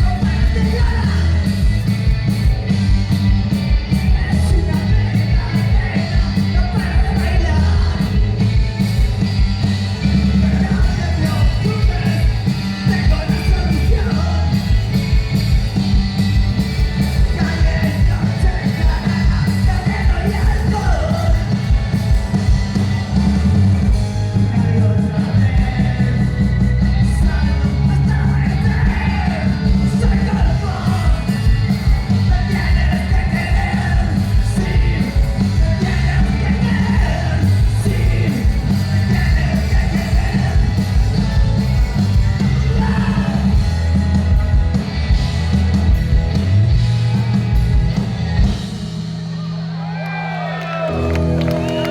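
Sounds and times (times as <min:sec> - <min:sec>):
sung and shouted vocals: 0:00.0 - 0:01.9, 0:03.9 - 0:08.5, 0:10.2 - 0:15.0, 0:17.0 - 0:22.1, 0:24.3 - 0:43.8
rock band playing live: 0:00.0 - 0:51.9.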